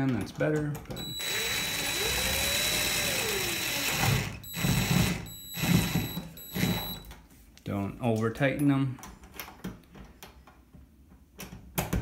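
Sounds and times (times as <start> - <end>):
cordless drill driving screw: 1.0 - 7.0.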